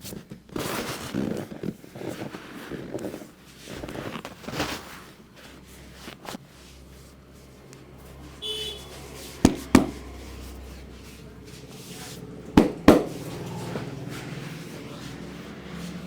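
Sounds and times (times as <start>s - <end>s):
hands slapping during massage: 9.4s - 10.1s, 12.6s - 13.4s.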